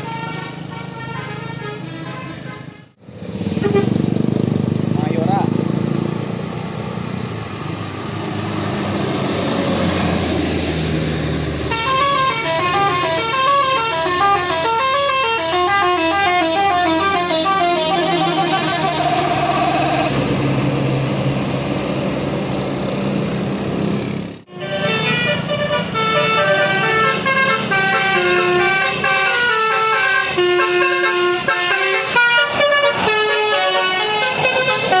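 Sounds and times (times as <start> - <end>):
multi-tone musical air horn: 0.0 - 3.0, 3.6 - 4.0, 11.7 - 20.1, 24.5 - 35.0
bus engine running: 0.0 - 35.0.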